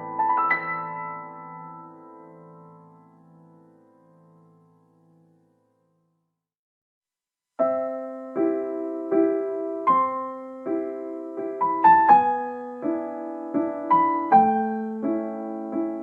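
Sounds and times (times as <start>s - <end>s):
gentle piano chords: 0.0s - 5.8s, 7.6s - 16.0s.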